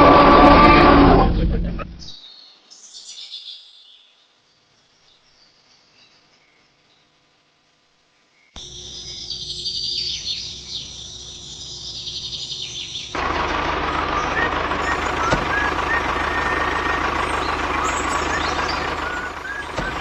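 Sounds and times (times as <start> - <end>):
engine-like noise with hum: 0.0 - 2.1, 8.6 - 20.0
birds chirping: 8.6 - 20.0.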